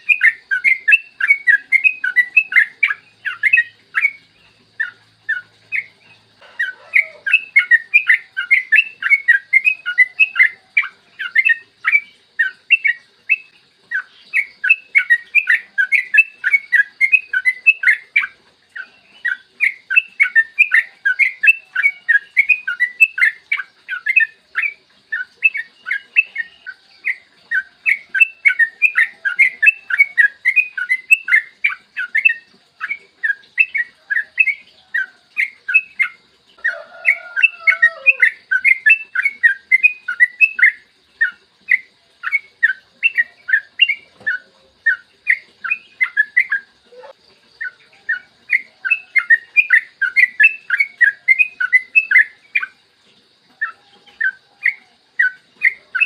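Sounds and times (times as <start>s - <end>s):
bulbul singing chattering notes: 0.0s - 56.0s.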